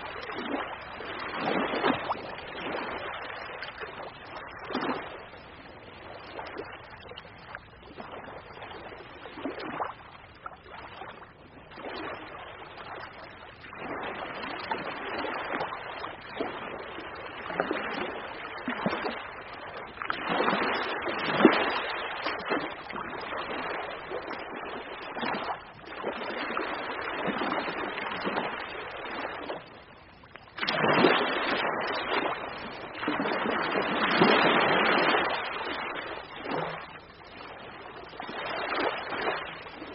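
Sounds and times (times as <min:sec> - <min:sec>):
ocean waves breaking: 0:30.6 - 0:36.9.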